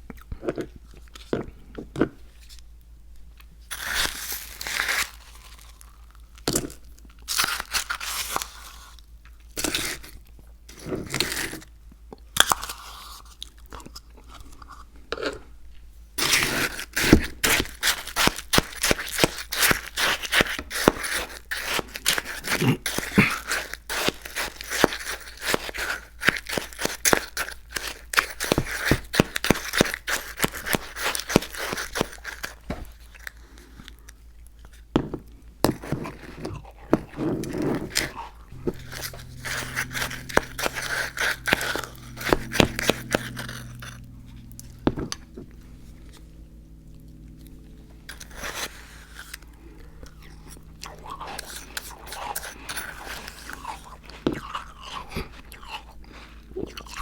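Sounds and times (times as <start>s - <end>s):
low steady hum: 30.8s - 57.0s
crunchy chewing and biting: 46.1s - 57.0s.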